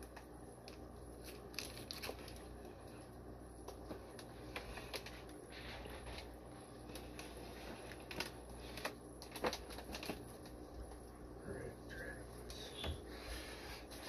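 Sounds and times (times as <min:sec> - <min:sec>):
plastic bags crinkling: 0:00.6 - 0:03.0, 0:03.8 - 0:10.7.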